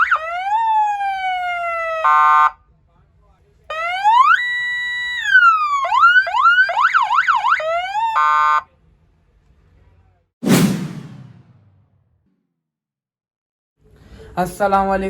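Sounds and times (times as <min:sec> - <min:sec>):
police siren cycling tones: 0:00.0 - 0:02.6, 0:03.7 - 0:08.6
short whoosh: 0:10.4 - 0:11.8.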